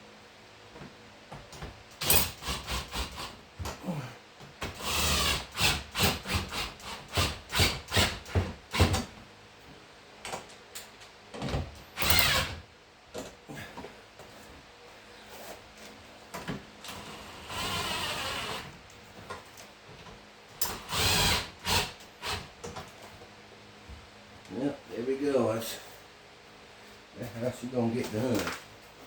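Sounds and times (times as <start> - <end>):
power driver whirring: 12.0 - 12.6, 20.7 - 22.4.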